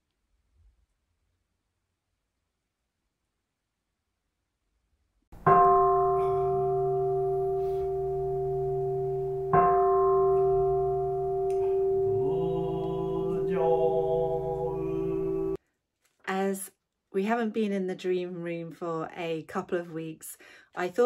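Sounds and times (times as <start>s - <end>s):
singing bowl ringing: 5.4s - 15.6s
low steady drone: 6.0s - 15.6s
rising tones: 6.2s - 15.6s.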